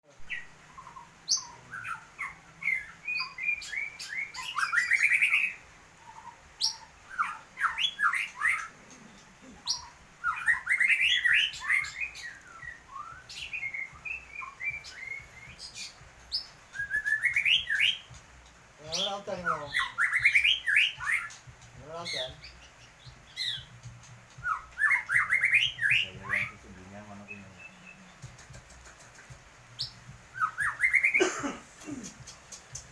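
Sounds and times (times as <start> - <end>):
songbird whistling and trilling: 0.2 - 32.9
sharp clicks: 28.2 - 29.5, 32.0 - 32.9.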